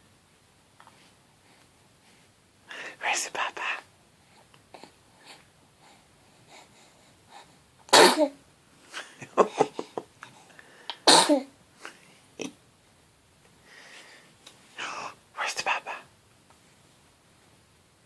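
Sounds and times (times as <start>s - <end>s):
baby sneezing: 7.9s - 8.4s, 11.0s - 11.5s.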